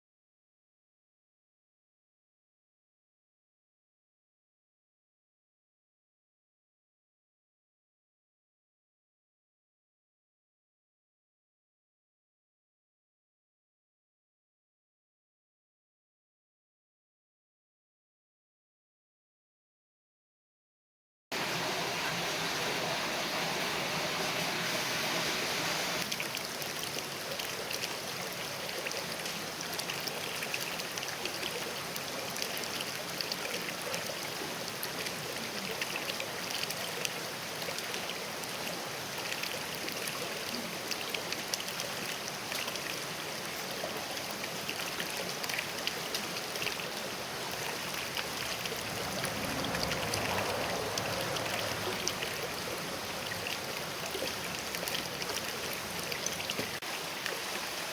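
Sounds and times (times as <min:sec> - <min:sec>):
creek water splashing over rocks: 0:21.3 - 0:57.9.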